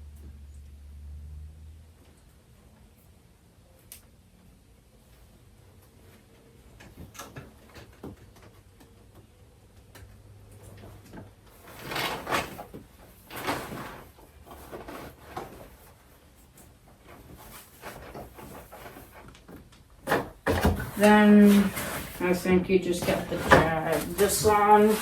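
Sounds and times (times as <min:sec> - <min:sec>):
scraping rustling handling noise: 0:10.7 - 0:25.0.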